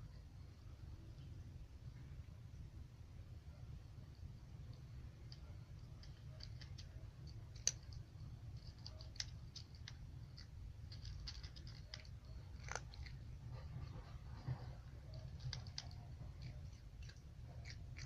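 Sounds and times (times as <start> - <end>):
steady low hum: 0.0 - 18.0
cat crunching dry kibble: 4.8 - 18.0.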